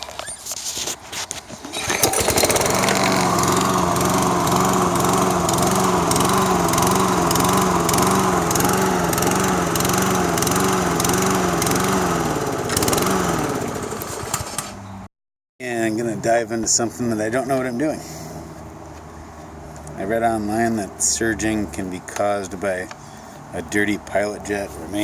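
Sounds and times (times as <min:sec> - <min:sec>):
lawn mower engine surging: 0:01.0 - 0:15.0.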